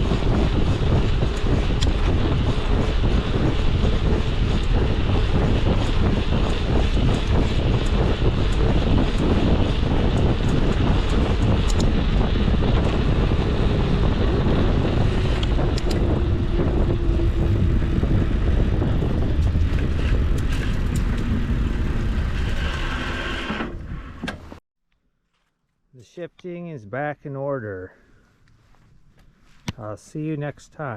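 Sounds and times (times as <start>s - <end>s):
low rolling rumble of bicycle: 0.0s - 24.6s, 28.0s - 29.7s
wind buffeting microphone: 0.0s - 24.6s.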